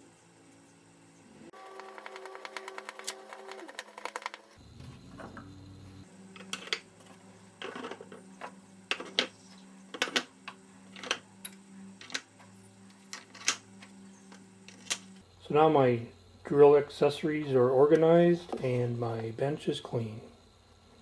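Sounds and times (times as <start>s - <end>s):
small items clicking against plastic: 1.7s - 4.5s.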